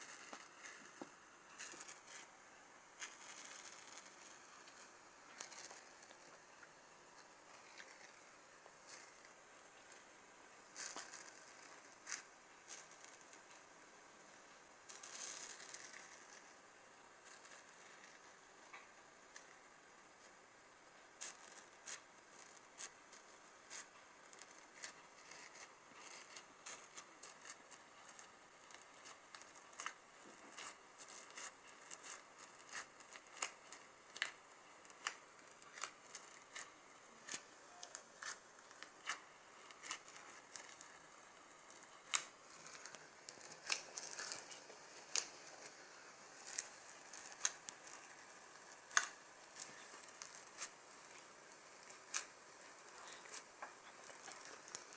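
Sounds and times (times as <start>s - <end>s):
slime being squished by hand: 21.1s - 54.9s.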